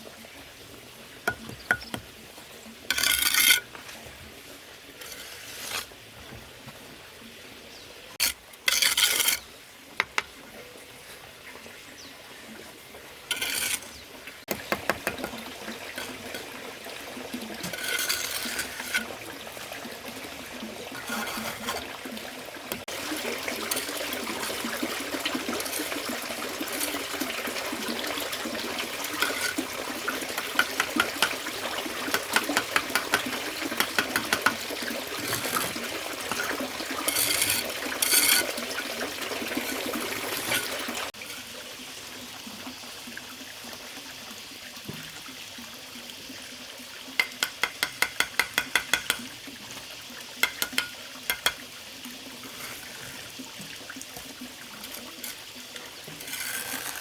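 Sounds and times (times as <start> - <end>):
hand scraping masonry: 2.9 - 4.1, 5.0 - 6.0, 8.2 - 9.4, 13.3 - 19.8, 20.5 - 41.5, 52.4 - 53.4, 54.2 - 57.0.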